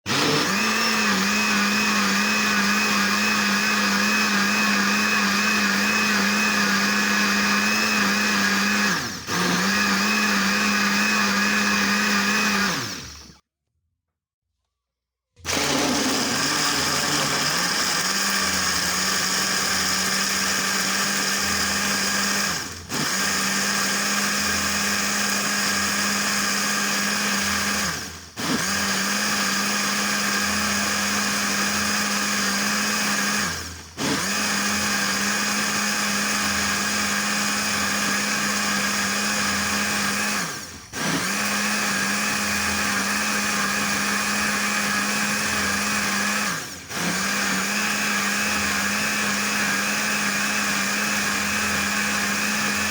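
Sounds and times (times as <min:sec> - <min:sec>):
blender motor whining: 0:00.0 - 0:13.4, 0:15.4 - 0:52.9.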